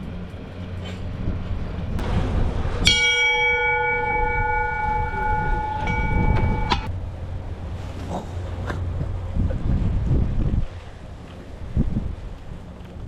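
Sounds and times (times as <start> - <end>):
low rumble: 0.0 - 12.8
bell ringing: 2.8 - 6.9.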